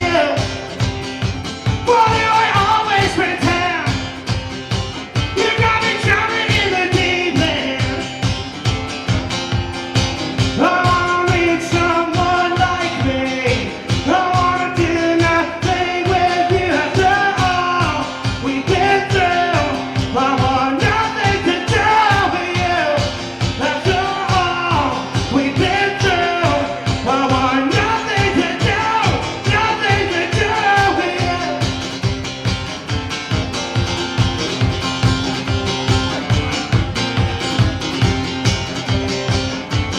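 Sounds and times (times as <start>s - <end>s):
drum beat: 0.0s - 39.9s
live rock band: 0.0s - 39.9s
person singing: 1.8s - 4.3s, 5.2s - 8.2s, 10.5s - 31.9s.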